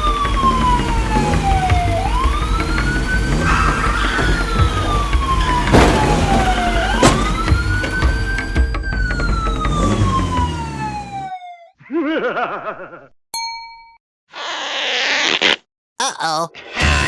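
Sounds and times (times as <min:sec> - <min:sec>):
background music: 0:00.0 - 0:10.7
wailing siren: 0:00.0 - 0:11.7
sharp knocks: 0:05.7 - 0:07.7.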